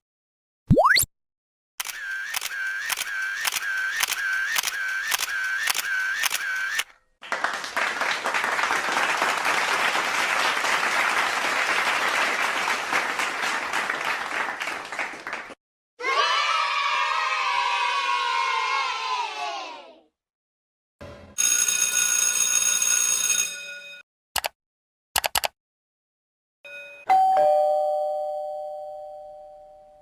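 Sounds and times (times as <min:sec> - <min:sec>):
camera shutter clicks: 0:01.8 - 0:06.8.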